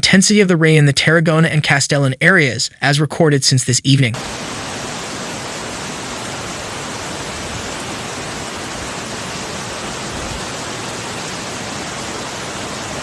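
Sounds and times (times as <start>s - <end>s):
rushing water hiss: 4.2s - 13.0s.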